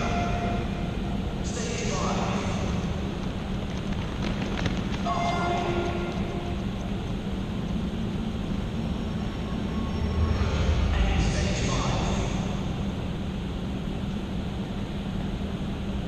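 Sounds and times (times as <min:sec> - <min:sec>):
low hum: 0:00.0 - 0:16.0
runners' footsteps: 0:02.8 - 0:08.0.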